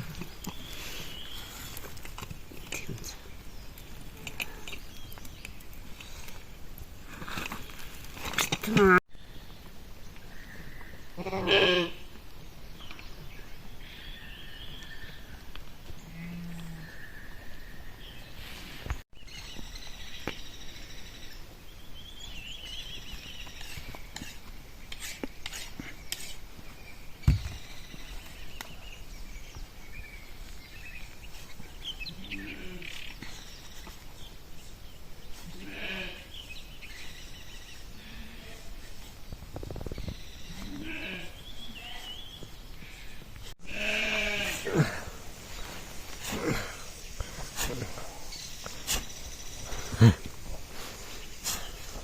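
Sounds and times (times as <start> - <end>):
sheep bleating: 11.2 - 12.0, 43.6 - 44.9.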